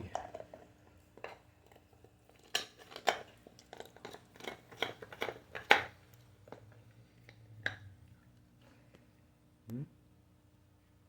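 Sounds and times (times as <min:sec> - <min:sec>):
dog chewing bone: 0:00.0 - 0:08.4.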